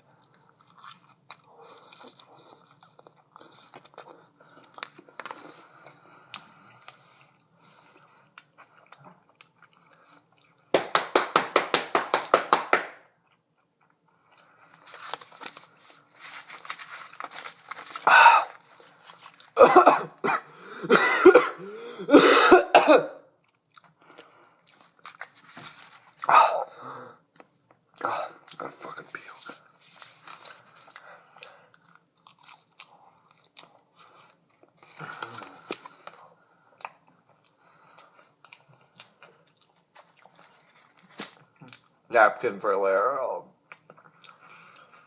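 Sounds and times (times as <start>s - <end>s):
man chewing: 0.0s - 10.7s, 13.2s - 19.6s, 23.4s - 26.6s, 29.4s - 42.0s, 43.6s - 45.0s
man clearing his throat: 19.6s - 23.2s
man coughing: 19.6s - 23.2s.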